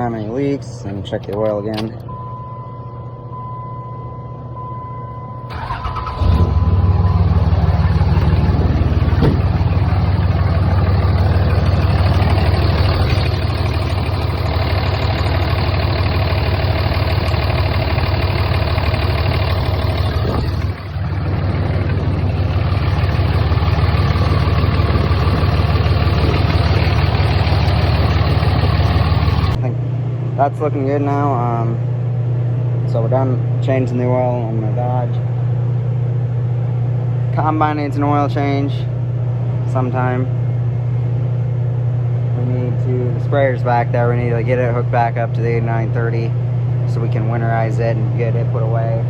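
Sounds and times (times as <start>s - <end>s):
truck engine starting and idling: 0.0s - 29.6s.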